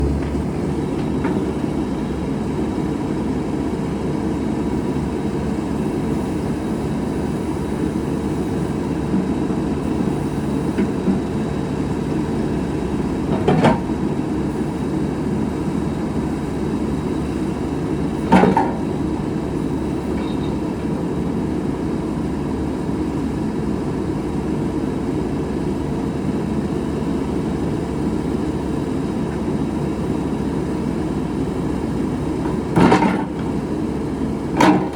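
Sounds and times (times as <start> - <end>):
short clunks: 0.0 - 1.6, 32.4 - 33.6, 34.5 - 34.9
diesel engine running: 0.0 - 34.9.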